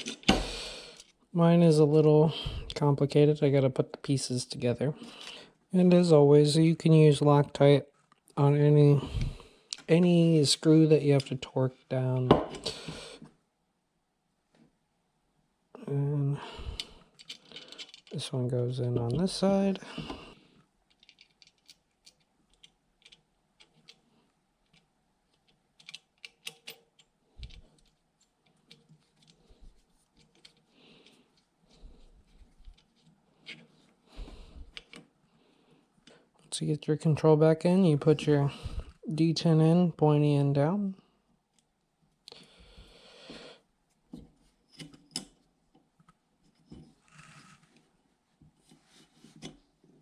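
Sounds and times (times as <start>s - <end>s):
metal parts clicking and tapping: 16.8s - 18.2s, 20.9s - 24.0s, 24.6s - 29.4s.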